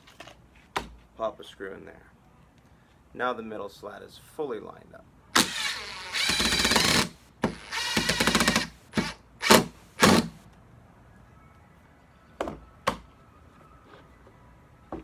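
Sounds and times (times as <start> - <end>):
cordless drill driving screw: 5.4 - 10.4.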